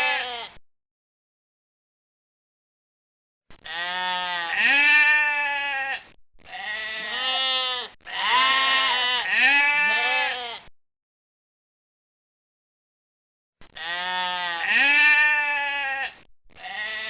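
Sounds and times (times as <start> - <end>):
goat bleating: 0.0 - 0.6, 3.6 - 10.7, 13.8 - 17.0.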